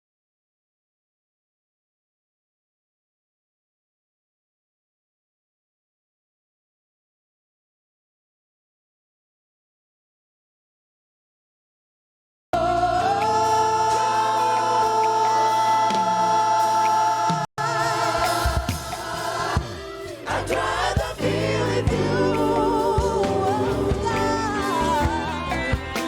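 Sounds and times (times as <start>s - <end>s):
gospel choir singing: 12.6s - 26.0s
instrumental backing: 12.6s - 26.0s.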